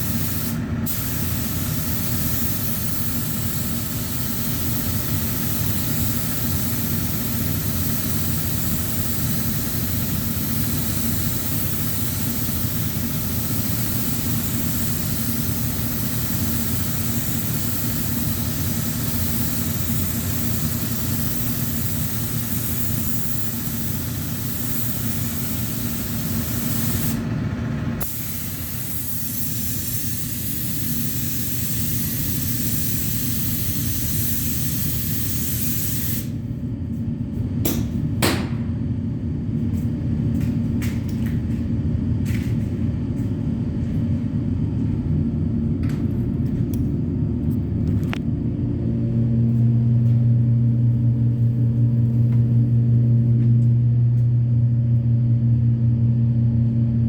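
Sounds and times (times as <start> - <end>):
spray gun hissing: 0.0 - 27.2, 28.0 - 36.3
machine hum: 9.6 - 29.0, 36.2 - 57.0.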